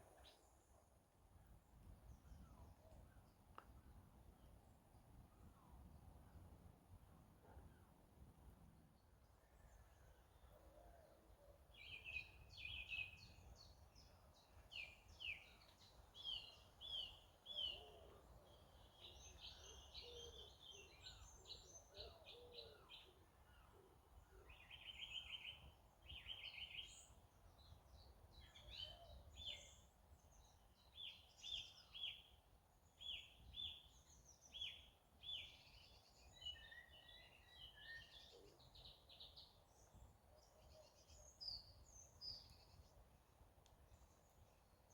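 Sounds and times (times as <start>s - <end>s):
songbirds singing and trilling: 9.6s - 44.9s.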